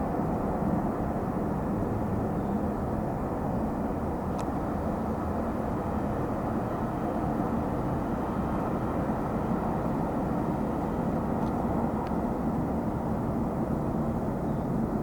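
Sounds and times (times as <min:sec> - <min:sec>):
jet engine noise: 0:00.0 - 0:15.0
faint tick: 0:11.4 - 0:12.2.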